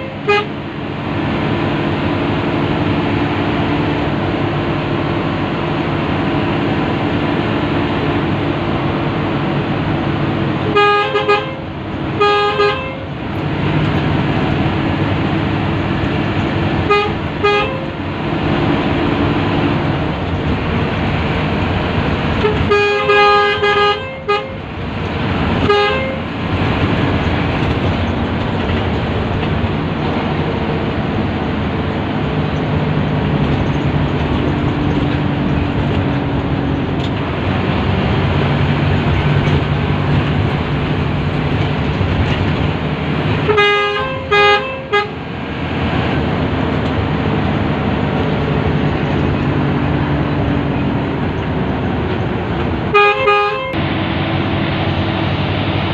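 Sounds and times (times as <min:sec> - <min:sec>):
bus horn two-note chord: 0:00.0 - 0:00.6, 0:10.6 - 0:13.1, 0:16.8 - 0:18.0, 0:22.4 - 0:24.6, 0:25.6 - 0:26.3, 0:43.4 - 0:45.2, 0:52.9 - 0:53.8
bus engine drone: 0:00.0 - 0:55.9
road noise: 0:00.0 - 0:55.9.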